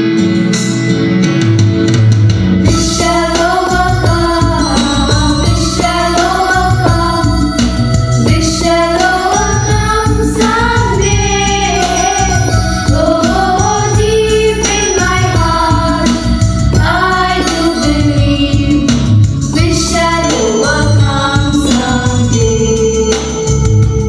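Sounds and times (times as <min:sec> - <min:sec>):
electronic keyboard: 0:00.0 - 0:24.0
children singing prayer song: 0:02.7 - 0:07.4, 0:08.3 - 0:18.6.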